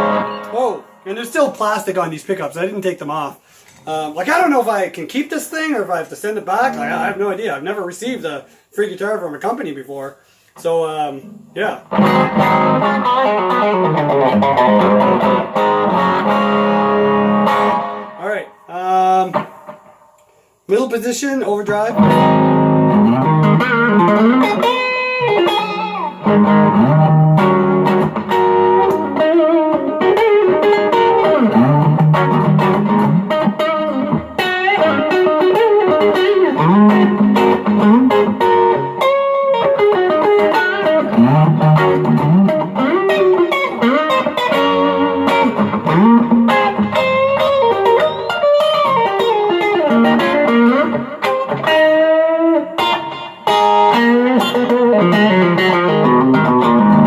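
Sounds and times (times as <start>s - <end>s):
overdriven electric guitar playing: 0.0s - 1.1s, 6.5s - 7.5s, 11.2s - 18.2s, 21.9s - 57.0s.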